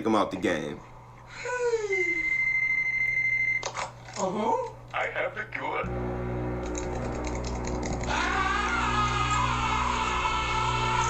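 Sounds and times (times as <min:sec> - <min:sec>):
steady low drone: 0:05.8 - 0:11.0
higher wavering tone: 0:05.9 - 0:10.1.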